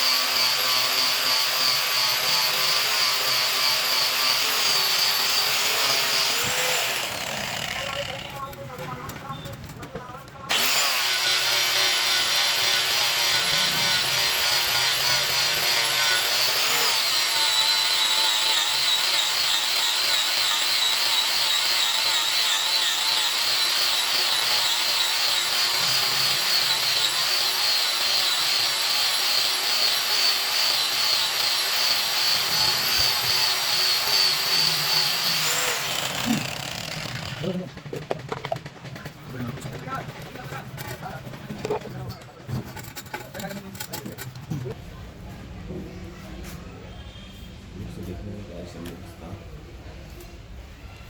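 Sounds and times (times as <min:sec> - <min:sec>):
electric grinder on steel pipe: 0:00.0 - 0:08.4, 0:10.5 - 0:37.5.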